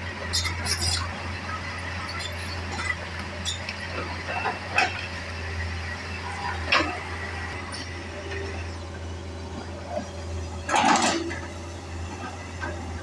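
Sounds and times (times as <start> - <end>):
diesel engine droning: 0.0 - 13.0.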